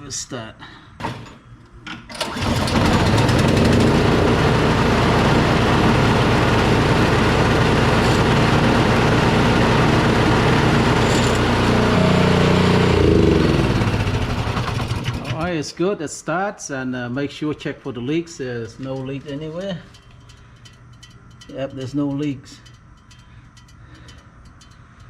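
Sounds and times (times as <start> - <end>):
snow blower engine starting and running: 2.1 - 15.5.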